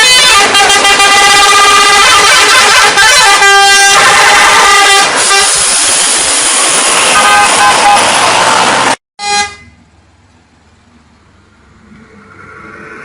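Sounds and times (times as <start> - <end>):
multi-tone air horn tune: 0.0 - 5.7, 7.2 - 8.1, 9.2 - 9.8.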